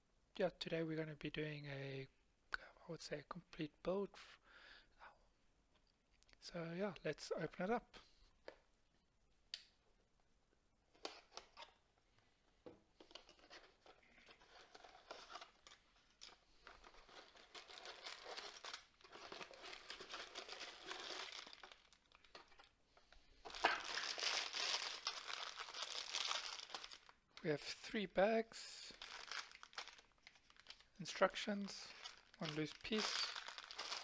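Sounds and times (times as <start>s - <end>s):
plastic bags crinkling: 13.5s - 22.8s, 23.4s - 27.7s, 28.8s - 34.0s.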